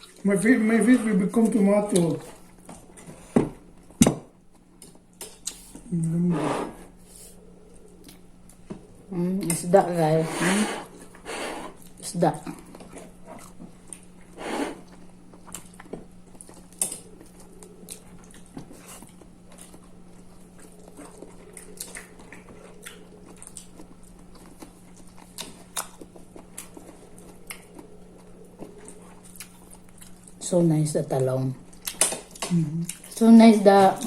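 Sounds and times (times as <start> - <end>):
low hum: 0.0 - 33.2
person chewing: 10.9 - 30.5, 31.6 - 33.3.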